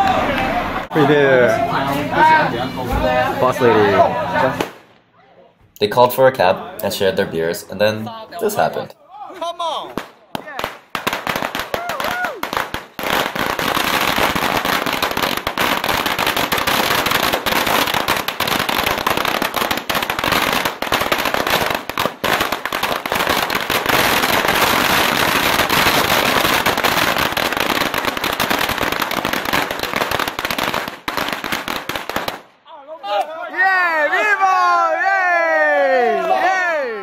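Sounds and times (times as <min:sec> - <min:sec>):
firework barrage banging and crackling: 0:04.5 - 0:05.0, 0:09.8 - 0:32.5.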